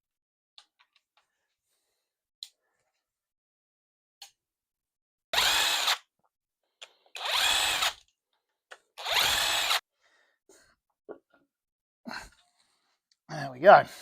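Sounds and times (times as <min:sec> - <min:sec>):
power drill motor spinning: 0:05.4 - 0:06.0, 0:07.1 - 0:08.0, 0:09.0 - 0:09.8.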